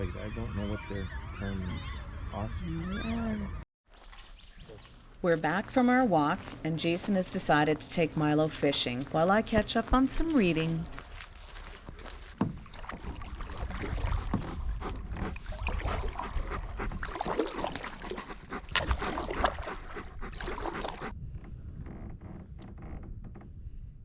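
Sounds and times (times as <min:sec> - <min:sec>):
water splashing: 0:10.1 - 0:21.1.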